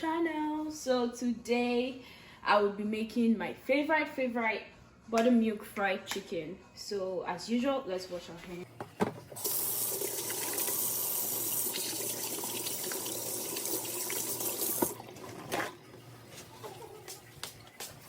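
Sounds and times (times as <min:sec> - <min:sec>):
tap water running into sink: 0:09.4 - 0:18.0.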